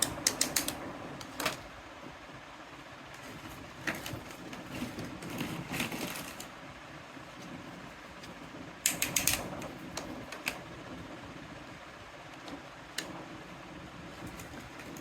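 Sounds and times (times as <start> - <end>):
low steady hum: 0.0 - 15.0
plastic toy pieces clicking: 8.9 - 9.5.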